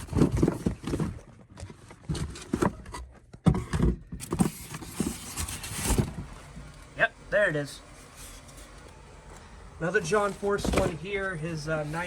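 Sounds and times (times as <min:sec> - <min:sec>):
packages knocking and clattering: 0:00.0 - 0:06.4.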